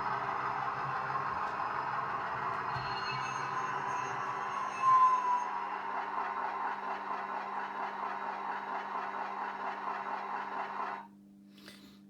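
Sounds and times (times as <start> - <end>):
model train diesel engine drone: 0.0 - 11.1
brief loud high tone: 2.5 - 5.6.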